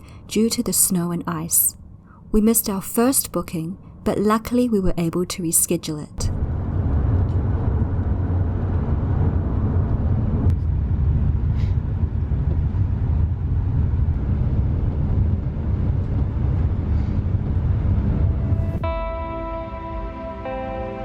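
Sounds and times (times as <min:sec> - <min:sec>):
low rumble of moving vehicle: 0:06.2 - 0:19.9.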